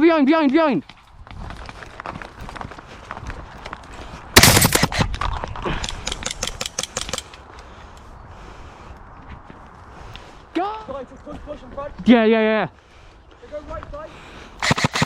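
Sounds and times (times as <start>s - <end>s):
airsoft guns firing: 4.4s - 5.0s, 6.1s - 7.3s, 14.6s - 15.0s.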